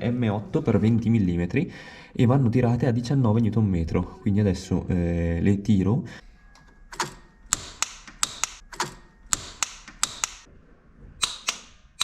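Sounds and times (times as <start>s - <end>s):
torque wrench clicking: 11.2s - 11.8s.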